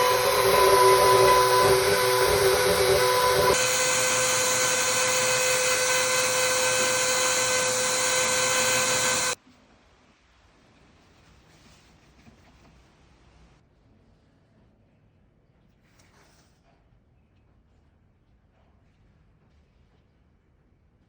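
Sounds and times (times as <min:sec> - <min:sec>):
power tool whining: 0:00.0 - 0:09.4.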